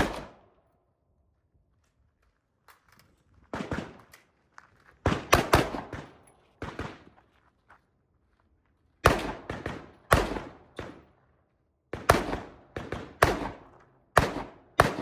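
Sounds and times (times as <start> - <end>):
rifle shots: 0.0 - 0.4, 3.5 - 4.1, 5.0 - 7.1, 9.0 - 11.0, 11.9 - 15.0.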